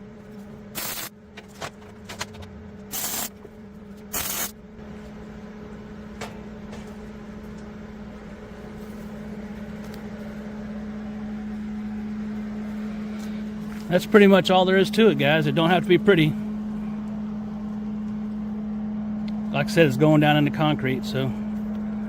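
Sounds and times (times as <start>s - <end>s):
engine low hum: 0.0s - 22.0s
welding hiss and crackle: 0.8s - 1.1s, 2.9s - 3.3s, 4.1s - 4.5s.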